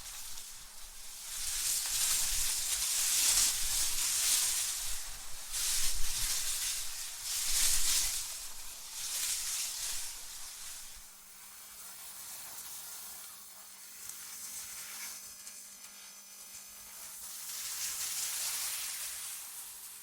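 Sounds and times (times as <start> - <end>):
airy synthetic wind hiss: 0.0 - 11.4.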